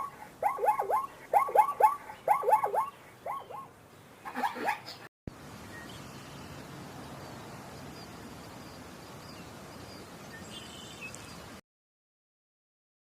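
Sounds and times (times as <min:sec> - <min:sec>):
faint bird chirps: 0:00.0 - 0:05.0
outdoor background noise: 0:00.0 - 0:11.6.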